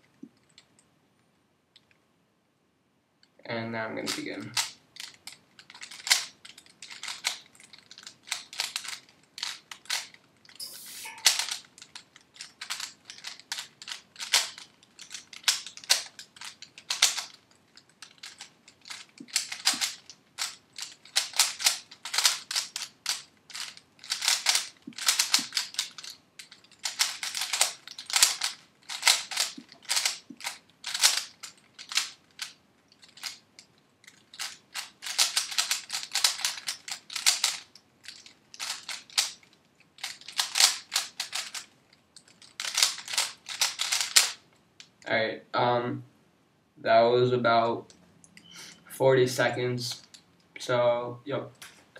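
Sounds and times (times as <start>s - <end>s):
puzzle cube plastic clicks: 4.1s - 45.1s.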